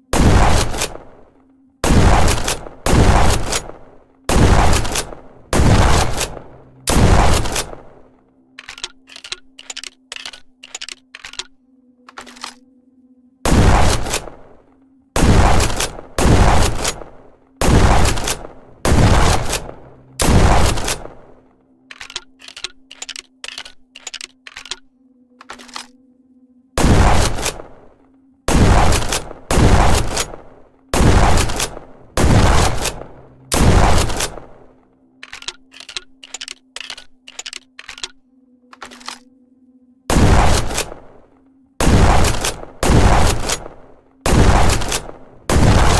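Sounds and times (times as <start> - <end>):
shotgun shots: 0.1 - 8.1, 13.5 - 14.6, 15.2 - 21.4, 26.8 - 27.9, 28.5 - 34.7, 40.1 - 41.2, 41.8 - 45.9
metallic shell loading clicks: 8.5 - 12.6, 21.9 - 26.0, 35.2 - 39.3.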